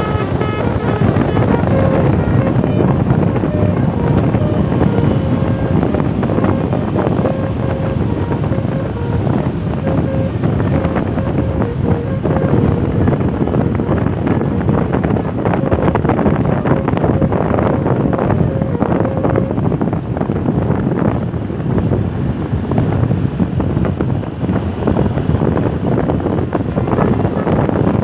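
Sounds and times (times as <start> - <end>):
road traffic rumble: 0.0 - 28.0
wind buffeting microphone: 0.0 - 28.0.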